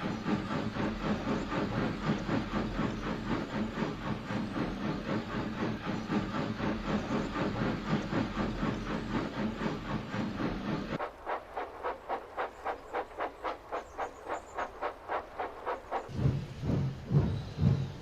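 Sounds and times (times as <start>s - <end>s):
steam locomotive chuffing: 0.0s - 18.0s
low rumble: 14.9s - 18.0s.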